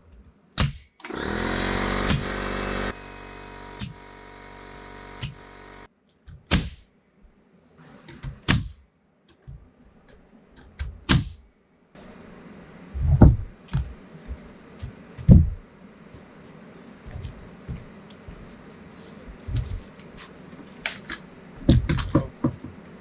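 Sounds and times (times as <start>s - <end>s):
heavy deep thumps: 13.0s - 15.7s.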